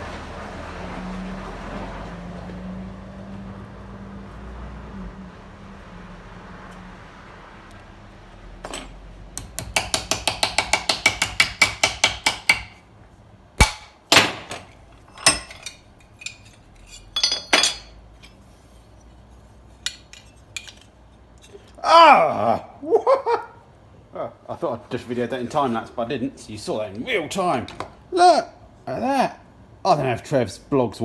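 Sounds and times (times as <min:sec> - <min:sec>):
hammer striking steel: 0:08.7 - 0:12.8, 0:13.6 - 0:18.0.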